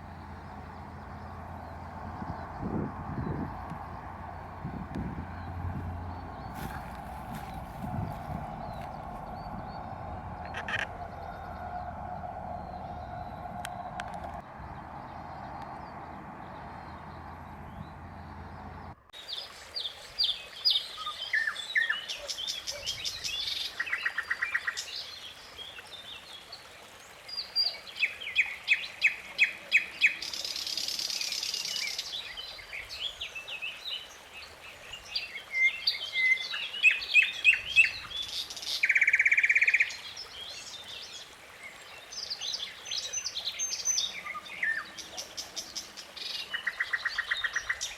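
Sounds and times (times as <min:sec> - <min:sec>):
steady low hum: 0:00.0 - 0:19.0
songbirds chirping and trilling: 0:00.0 - 0:47.9.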